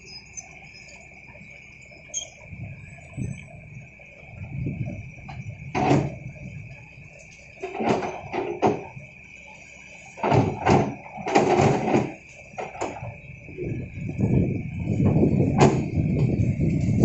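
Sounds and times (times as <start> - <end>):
high-pitched whine: 0.0 - 17.0
excavator clanks and scraping knocks: 5.2 - 6.5, 7.2 - 9.2, 10.0 - 13.8, 14.9 - 17.0.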